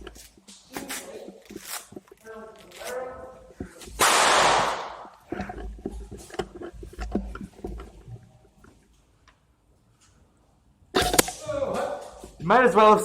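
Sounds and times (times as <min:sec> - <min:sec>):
sharp clicks and knocks: 0:04.9 - 0:09.4.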